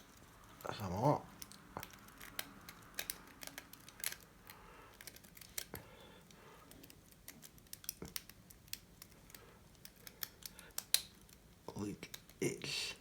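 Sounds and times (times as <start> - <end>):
lock pick clicking and scraping: 1.3 - 5.8.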